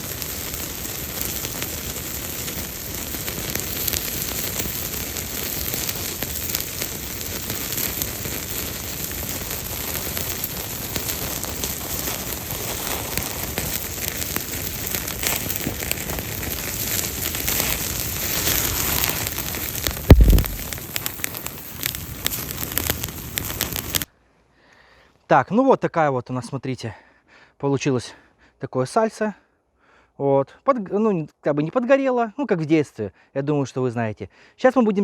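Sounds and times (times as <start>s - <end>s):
campfire crackling and hissing: 0.0s - 24.2s
loud thump: 20.1s - 20.6s.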